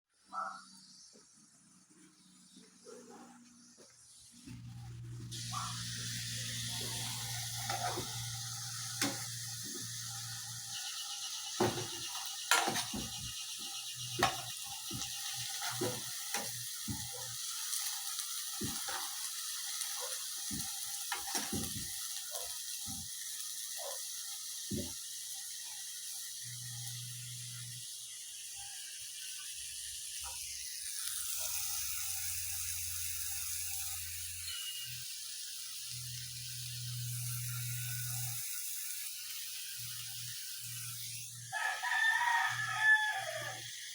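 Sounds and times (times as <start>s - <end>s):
food sizzling in a frying pan: 4.2s - 43.9s
spatula scraping a pan: 6.5s - 22.2s.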